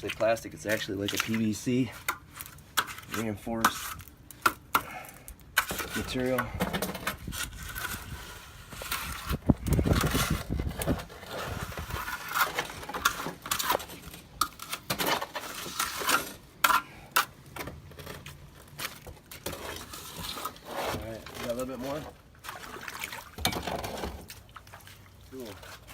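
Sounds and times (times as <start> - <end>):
water splashing: 21.9 - 25.9.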